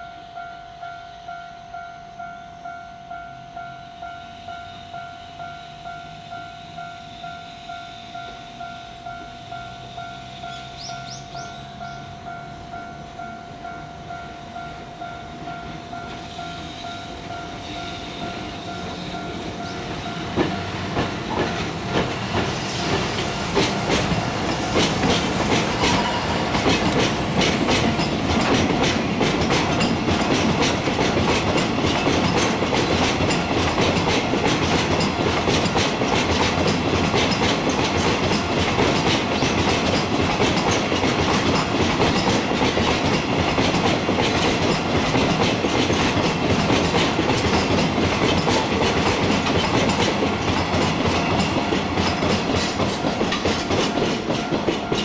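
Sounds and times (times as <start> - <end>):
train wheels clattering on rails: 15.5 - 55.0.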